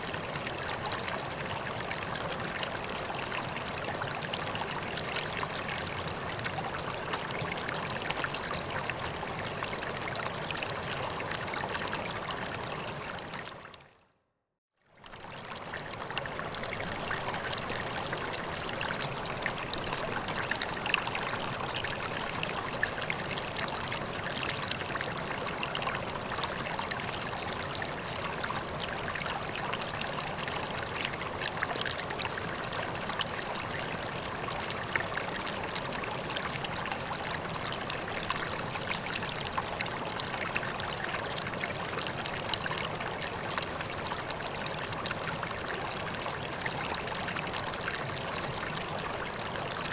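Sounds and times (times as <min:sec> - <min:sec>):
pond water trickling: 0:14.8 - 0:49.9.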